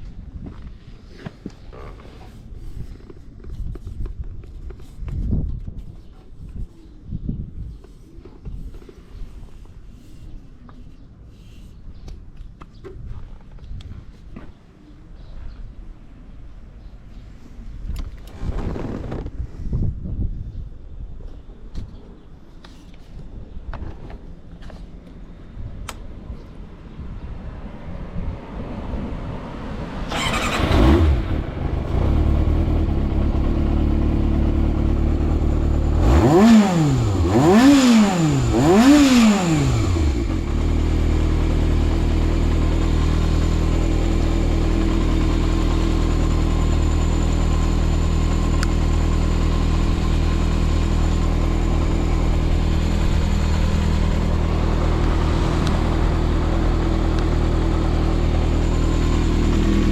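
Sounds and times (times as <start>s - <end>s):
motorcycle engine idling and revving: 27.2s - 59.9s.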